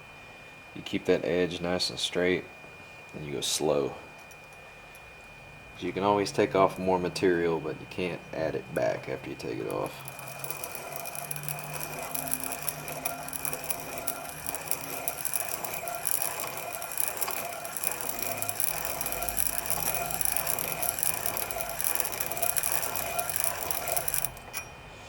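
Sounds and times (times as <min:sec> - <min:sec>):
piston ring filer grinding: 0:08.8 - 0:24.8.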